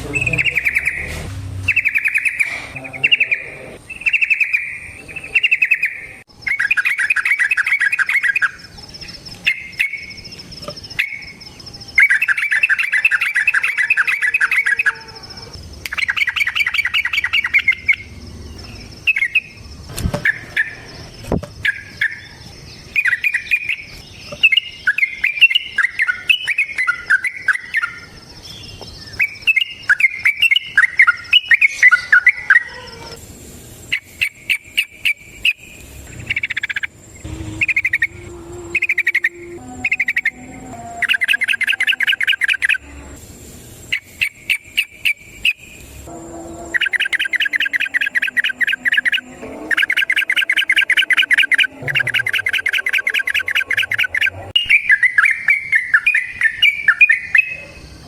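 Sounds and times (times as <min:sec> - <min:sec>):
birds singing trills: 0:00.0 - 0:58.0
thin high whine: 0:35.7 - 0:44.0, 0:45.8 - 0:54.8.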